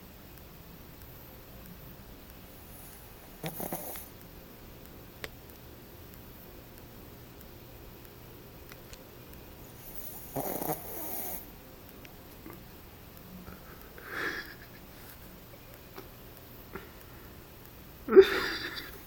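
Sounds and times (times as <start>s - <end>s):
dog snoring: 2.6s - 4.2s, 9.8s - 11.5s.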